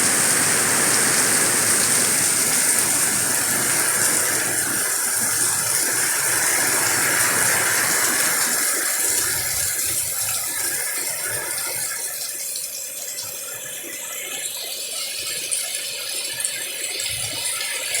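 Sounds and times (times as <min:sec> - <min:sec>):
heavy rain in wind: 0:00.0 - 0:12.2.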